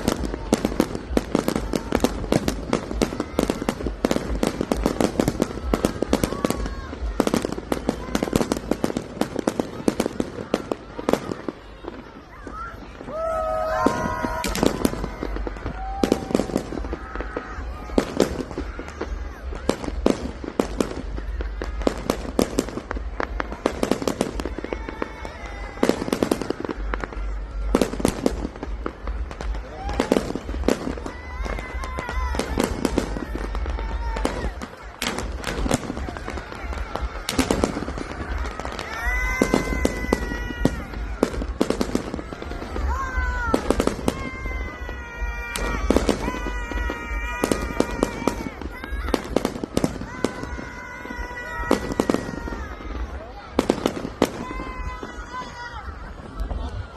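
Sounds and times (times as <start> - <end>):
fireworks bangs and crackles: 0.0 - 56.9.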